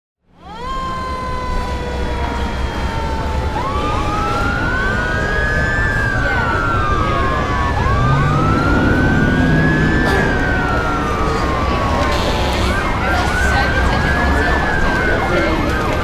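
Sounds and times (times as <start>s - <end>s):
low rumble of city traffic: 0.2s - 16.0s
police sirens wailing: 0.3s - 16.0s.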